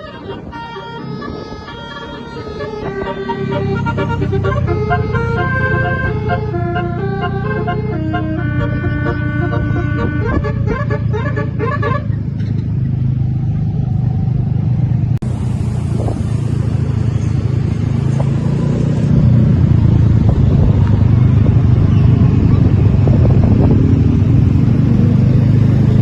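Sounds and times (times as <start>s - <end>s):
vehicle engine and road noise: 0.0s - 26.0s.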